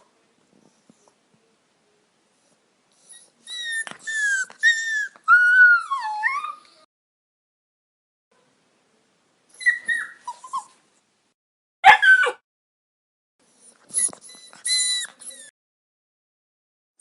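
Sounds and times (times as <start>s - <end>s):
puppy whimpering and whining: 3.0s - 6.9s, 9.6s - 10.8s, 13.5s - 15.5s.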